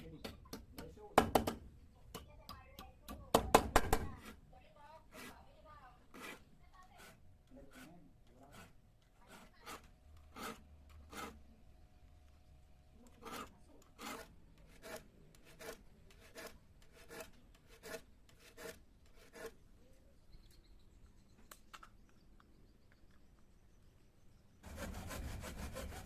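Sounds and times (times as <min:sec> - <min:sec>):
file scraping saw teeth: 0:07.0 - 0:11.4, 0:13.2 - 0:19.6.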